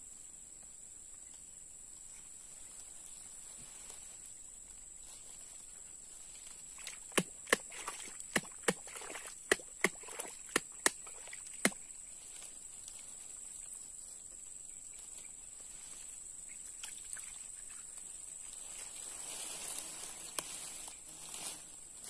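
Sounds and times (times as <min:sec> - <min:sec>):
insects droning: 0:00.0 - 0:22.0
sharp knocks or slaps: 0:07.1 - 0:08.9, 0:09.5 - 0:11.0, 0:11.6 - 0:11.8.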